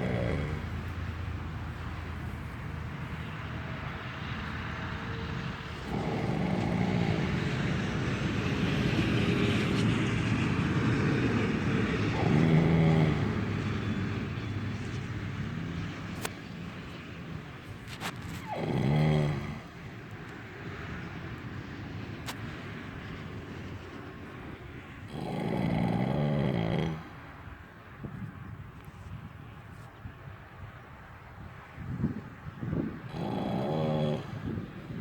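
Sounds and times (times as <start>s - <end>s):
animal snoring: 0.0s - 1.0s, 5.6s - 9.0s, 12.1s - 13.6s, 17.9s - 19.7s, 25.1s - 27.2s, 33.1s - 35.0s.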